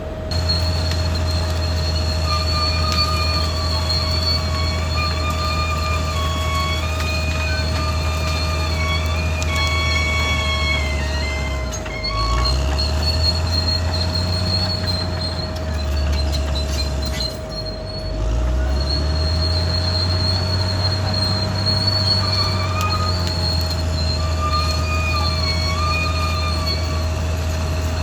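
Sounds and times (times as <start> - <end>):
bulldozer diesel engine running hard: 0.0 - 28.0
crawler tracks squealing: 0.0 - 28.0.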